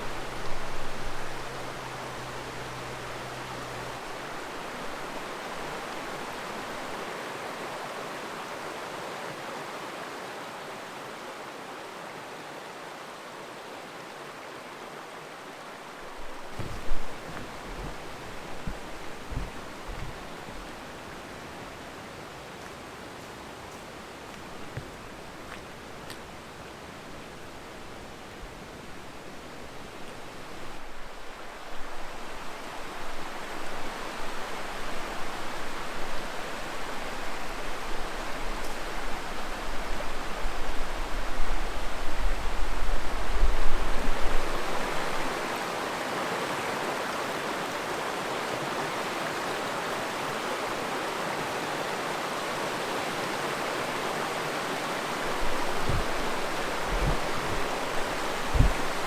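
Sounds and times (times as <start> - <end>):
creek water rushing: 0.0 - 59.0
short low thumps: 16.5 - 20.7, 58.5 - 59.0.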